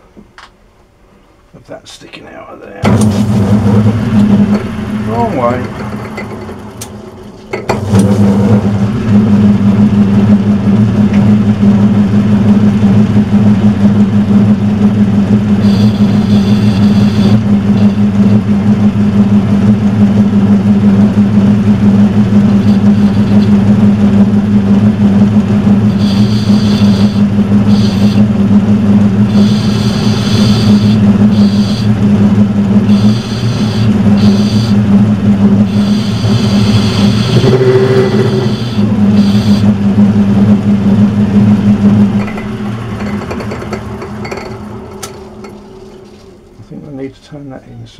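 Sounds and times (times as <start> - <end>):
metal lathe humming: 2.9 - 46.2
high-pitched cutting sound: 15.6 - 18.4, 22.4 - 23.6, 25.8 - 28.3, 29.2 - 32.0, 32.8 - 34.9, 35.6 - 39.8.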